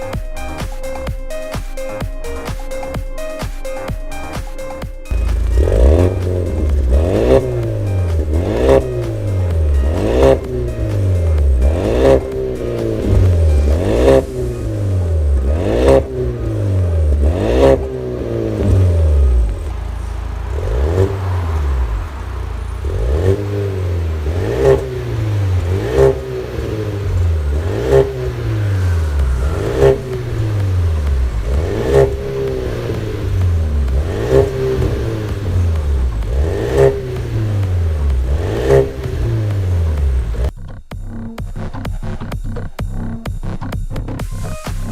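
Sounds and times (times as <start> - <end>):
car engine revving: 0.0 - 44.9.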